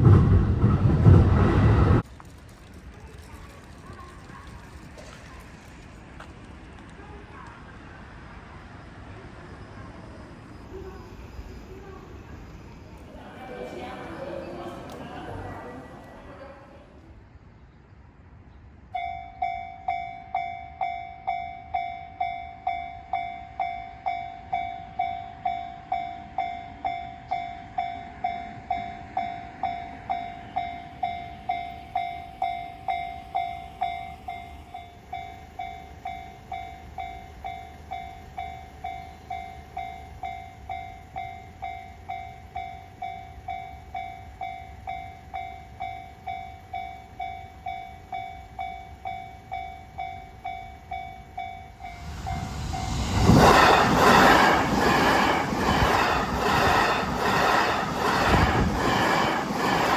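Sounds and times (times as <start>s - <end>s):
train running past: 0.0s - 59.9s
level-crossing warning bell ringing: 19.0s - 53.0s.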